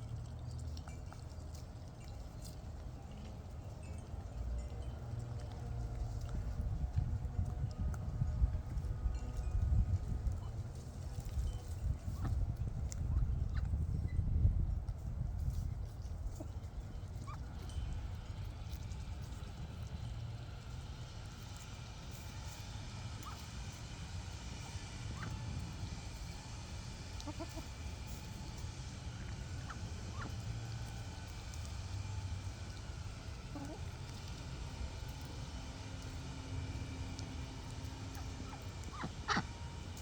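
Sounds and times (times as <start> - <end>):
steady low rumble: 0.0 - 40.0
chickens clucking: 27.1 - 28.6, 29.6 - 31.0, 33.2 - 35.2, 37.1 - 40.0.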